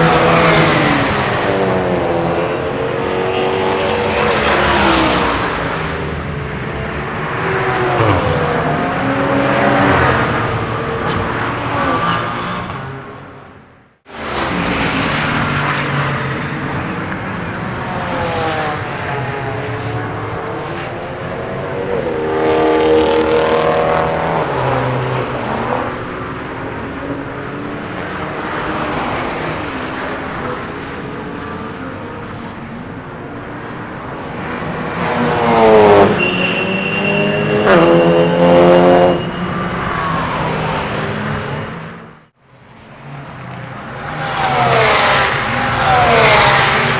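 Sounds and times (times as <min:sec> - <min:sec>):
race cars passing at speed: 0:00.0 - 0:46.9.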